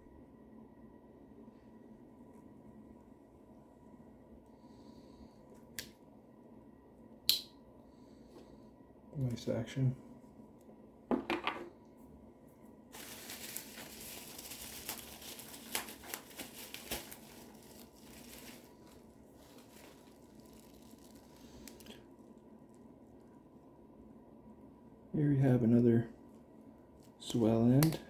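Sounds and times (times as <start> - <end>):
packaging crinkling and tearing: 13.0 - 22.8.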